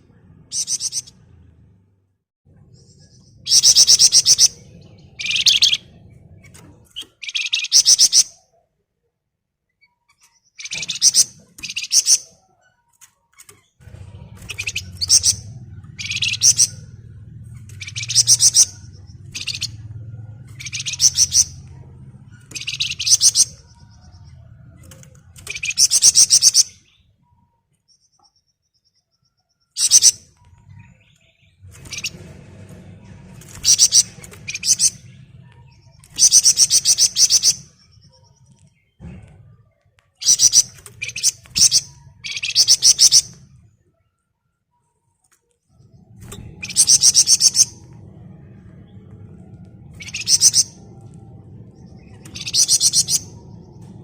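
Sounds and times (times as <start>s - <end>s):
bird singing rapid high trills: 0.5s - 1.2s, 2.7s - 6.1s, 7.0s - 8.5s, 13.8s - 27.2s, 29.0s - 32.3s, 33.4s - 38.9s, 40.2s - 43.6s, 45.9s - 48.1s, 49.9s - 54.0s.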